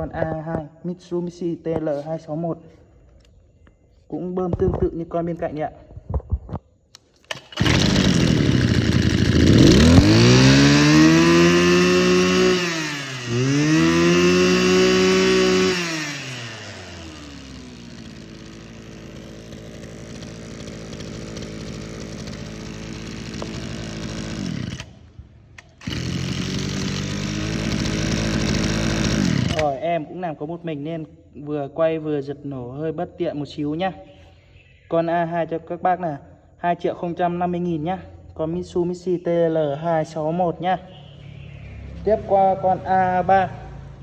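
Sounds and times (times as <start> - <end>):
brush cutter engine revving: 7.2 - 29.9.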